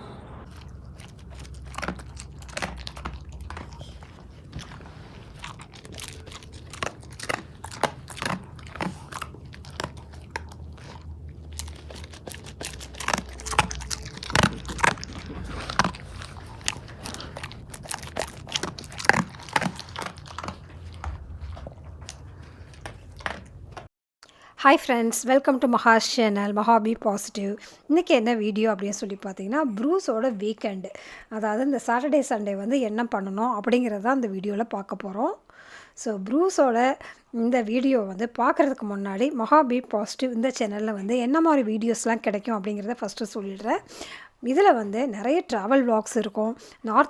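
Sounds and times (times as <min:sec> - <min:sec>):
low steady hum: 0:00.0 - 0:23.9
dog chewing with crunches: 0:00.5 - 0:23.9.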